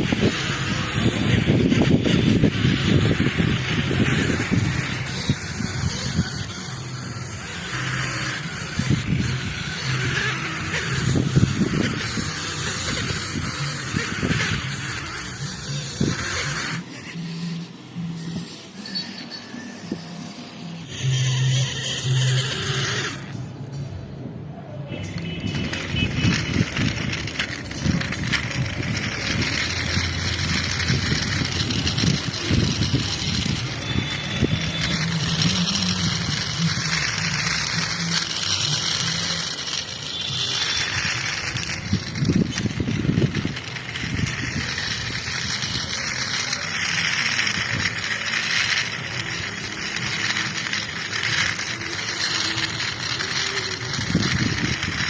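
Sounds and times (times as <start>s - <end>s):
rattling clatter: 25.2s - 55.0s.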